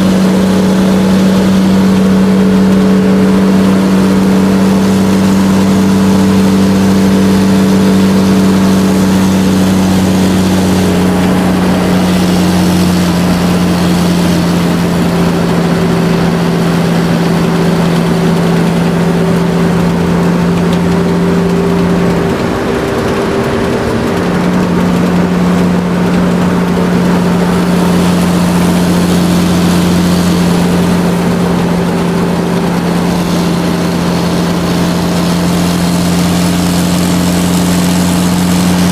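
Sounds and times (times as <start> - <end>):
truck engine droning: 0.0 - 38.9.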